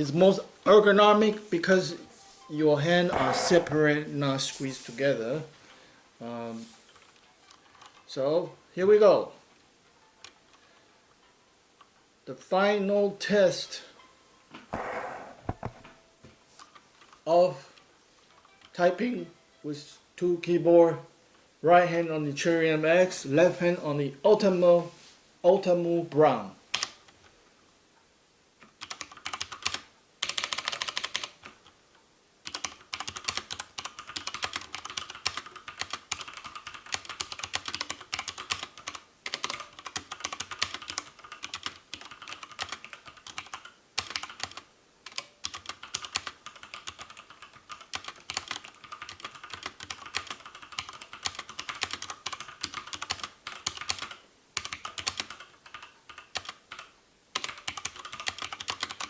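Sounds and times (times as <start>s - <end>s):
fast typing on mechanical keyboards: 6.9s - 8.0s, 28.8s - 31.7s, 32.4s - 59.0s.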